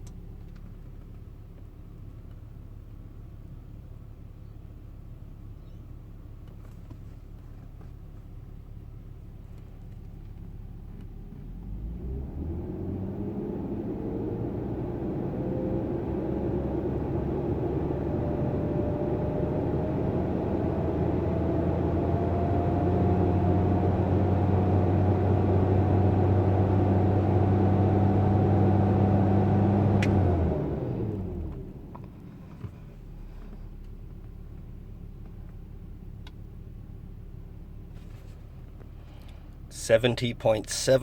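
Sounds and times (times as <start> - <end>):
car engine revving: 11.3 - 31.9.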